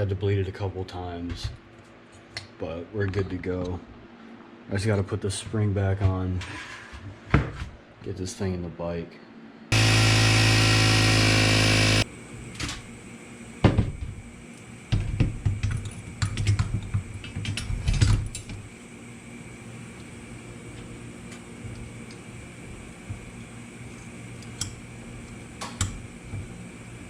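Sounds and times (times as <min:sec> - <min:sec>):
loud motor whine: 0:09.7 - 0:12.1.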